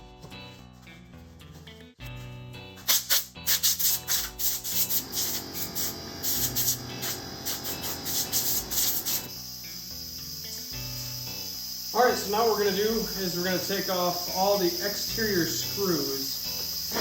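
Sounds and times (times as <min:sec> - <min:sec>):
background music: 0:00.0 - 0:17.0
brush scrubbing plastic: 0:02.9 - 0:09.2.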